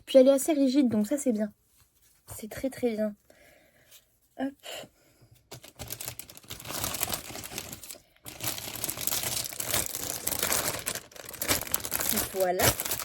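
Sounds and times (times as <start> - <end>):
packaging crackling and rustling: 5.5 - 13.0.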